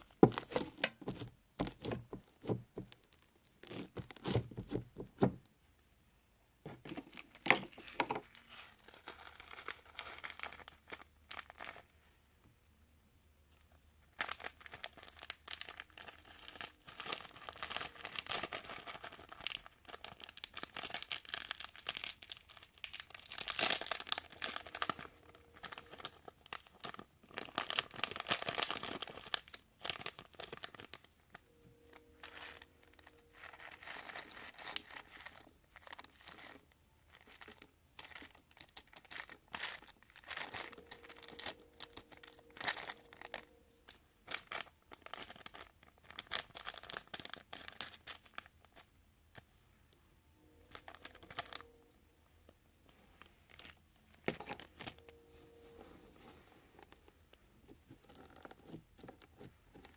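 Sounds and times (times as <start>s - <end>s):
slime crackling and popping: 0.0s - 4.8s, 8.8s - 11.9s, 14.0s - 31.1s.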